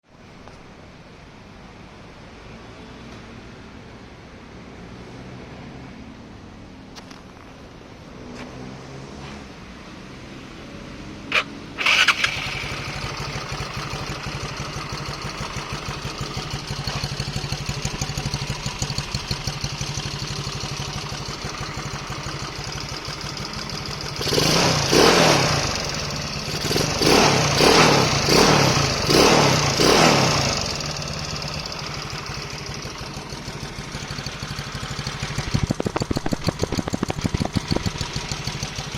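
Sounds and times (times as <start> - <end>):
scooter engine revving and idling: 11.3 - 38.9.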